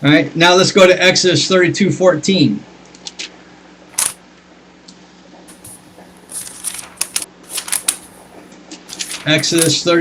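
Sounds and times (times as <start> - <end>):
faint steady hum: 0.0 - 10.0
thin paper pages turning: 5.5 - 9.9
paper rustling and crinkling: 5.5 - 10.0.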